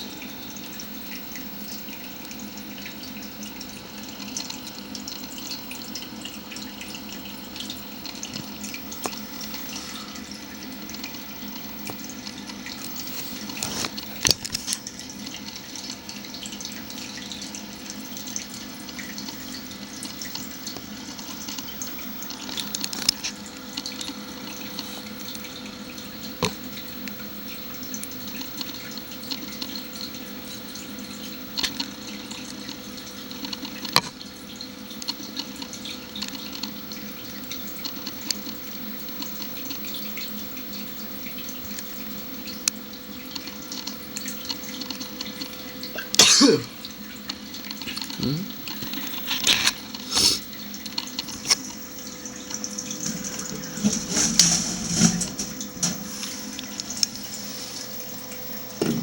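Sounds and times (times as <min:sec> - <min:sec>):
water trickling: 0:00.0 - 0:59.0
low steady hum: 0:38.4 - 0:59.0.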